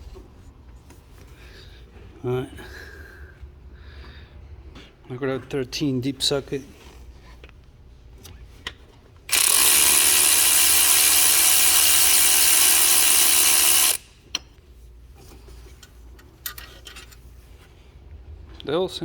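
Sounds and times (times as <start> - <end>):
electric ratchet spinning: 9.3 - 14.2.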